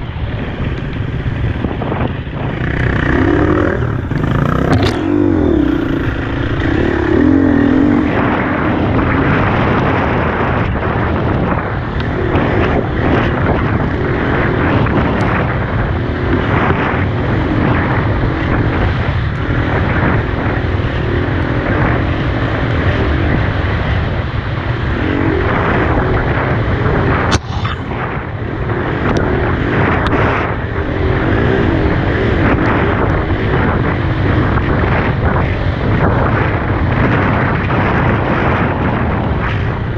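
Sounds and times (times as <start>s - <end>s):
dirt bike engine running: 0.0s - 38.6s.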